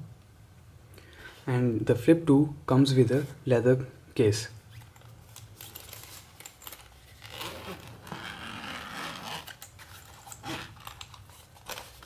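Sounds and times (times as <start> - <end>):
zipper pulled open: 6.6 - 11.1.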